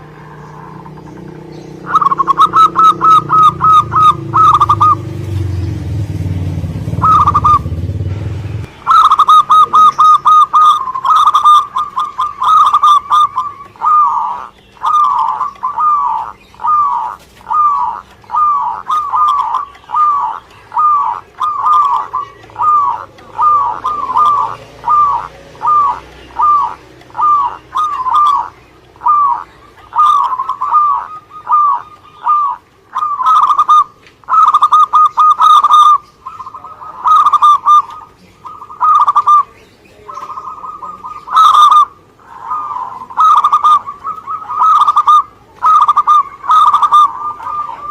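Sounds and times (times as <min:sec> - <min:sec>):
dove cooing: 0:00.0 - 0:47.9.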